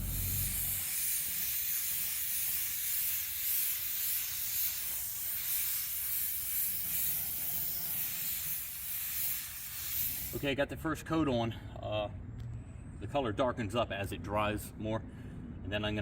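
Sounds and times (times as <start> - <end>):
paint spray gun hissing: 0.0 - 10.5.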